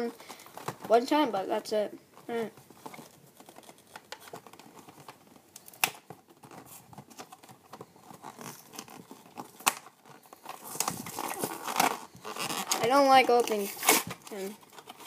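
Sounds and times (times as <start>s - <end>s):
packaging crinkling and tearing: 2.2s - 15.0s
sharp plastic snaps: 3.9s - 6.2s.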